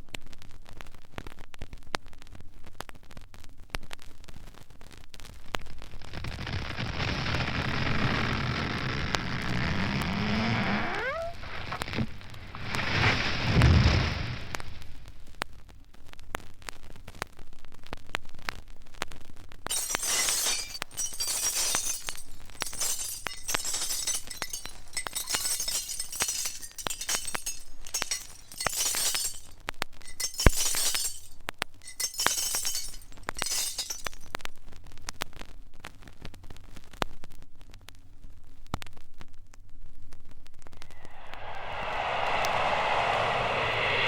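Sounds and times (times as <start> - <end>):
glass shards clinking: 19.7 - 34.3
glass shattering: 19.7 - 34.3.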